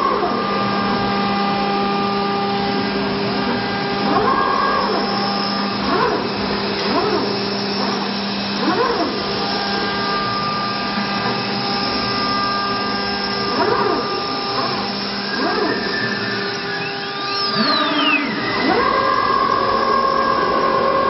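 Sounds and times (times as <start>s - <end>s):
cnc router whining: 0.0s - 21.0s.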